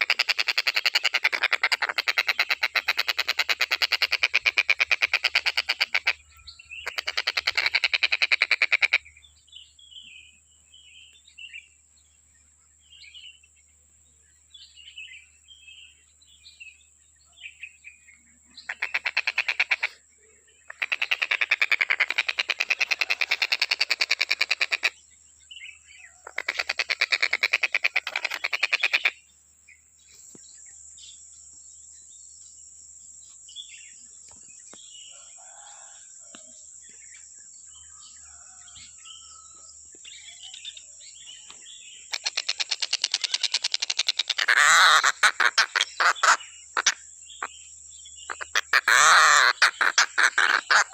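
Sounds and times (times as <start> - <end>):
kingfisher rattling calls: 6.8 - 9.0, 42.1 - 47.0, 48.3 - 50.9.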